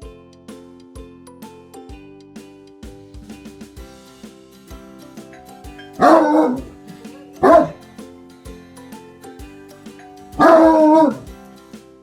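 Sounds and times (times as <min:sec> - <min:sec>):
music with drum beat: 0:00.0 - 0:12.0
dog barking: 0:05.8 - 0:06.7, 0:07.4 - 0:07.8, 0:10.4 - 0:11.3.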